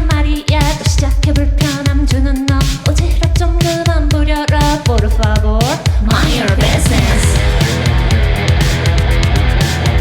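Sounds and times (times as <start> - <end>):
drum beat and bass: 0.0 - 10.0
person singing: 4.6 - 7.9.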